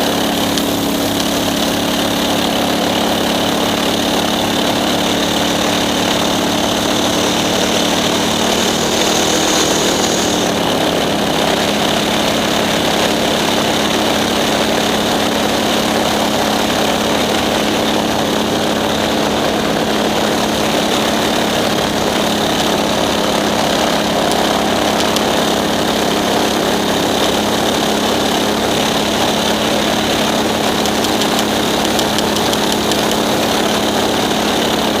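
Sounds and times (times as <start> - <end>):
engine running steadily: 0.0 - 35.0
rushing noise: 0.0 - 35.0.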